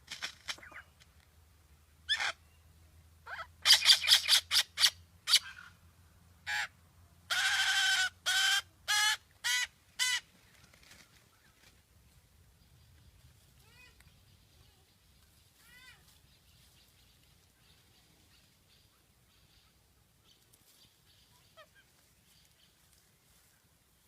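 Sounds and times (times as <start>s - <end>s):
bird squawking: 2.1s - 2.4s, 3.3s - 5.8s.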